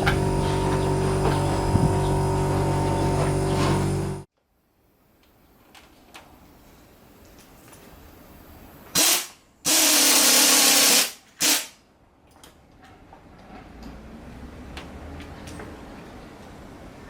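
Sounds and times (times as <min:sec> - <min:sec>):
pressurised gas spraying hiss: 0:08.9 - 0:11.8.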